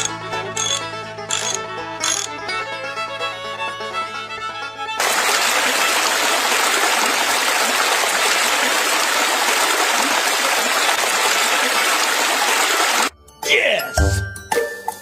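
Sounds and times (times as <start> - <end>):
running water: 5.0 - 13.1.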